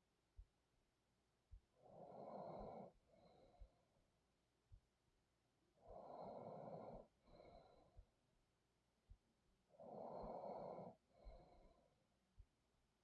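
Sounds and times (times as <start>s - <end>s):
person breathing heavily in sleep: 1.8s - 4.0s, 5.8s - 8.1s, 9.7s - 12.0s.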